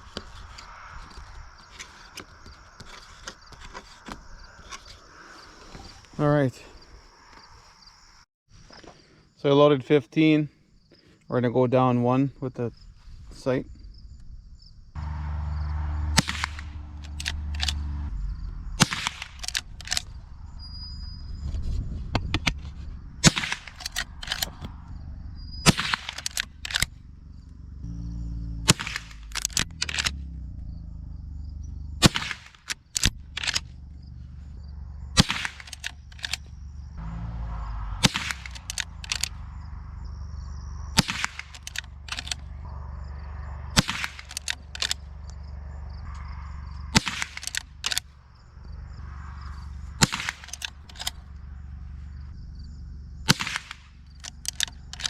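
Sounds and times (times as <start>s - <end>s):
rifle shots: 16.0s - 18.1s, 18.8s - 20.1s, 23.2s - 24.7s, 25.6s - 26.9s, 28.6s - 30.2s, 32.0s - 33.7s, 35.2s - 36.4s, 38.0s - 39.4s, 41.0s - 42.4s, 43.7s - 45.0s, 47.0s - 48.0s, 50.0s - 51.2s, 53.3s - 55.0s
rifle lever clicks: 16.3s - 17.8s, 18.8s - 20.1s, 23.2s - 24.8s, 25.7s - 26.9s, 28.7s - 30.2s, 32.1s - 33.7s, 35.2s - 36.4s, 38.0s - 39.4s, 41.0s - 42.5s, 43.8s - 45.0s, 47.0s - 48.0s, 50.0s - 51.2s, 53.3s - 55.0s.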